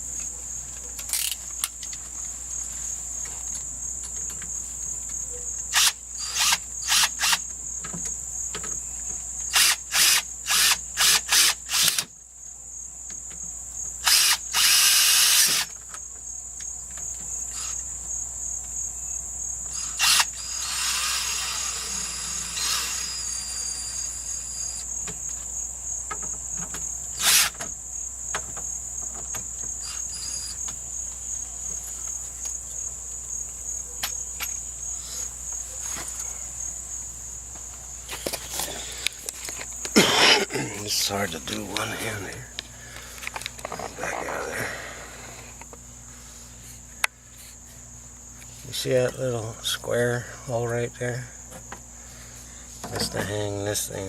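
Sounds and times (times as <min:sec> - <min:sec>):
crickets chirping: 0:00.0 - 0:54.0
cordless drill bursts: 0:05.7 - 0:07.5, 0:09.5 - 0:12.1, 0:14.0 - 0:15.7, 0:19.7 - 0:24.8, 0:27.2 - 0:27.6.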